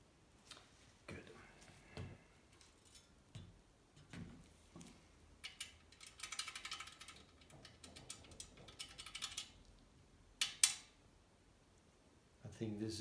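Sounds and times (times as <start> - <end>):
small metallic mechanism clicks: 5.4 - 9.7, 10.4 - 11.0.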